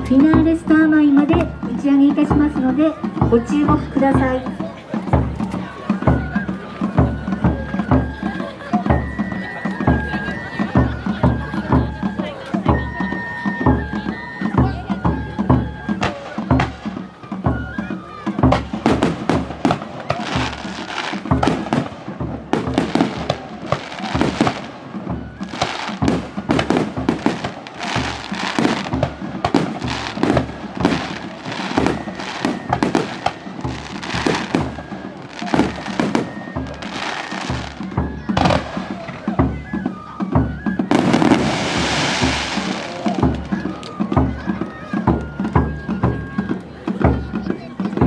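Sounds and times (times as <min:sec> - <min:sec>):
fireworks crackling hiss: 0:18.8 - 0:39.2, 0:40.8 - 0:44.0
firework shells booming: 0:40.9 - 0:42.9.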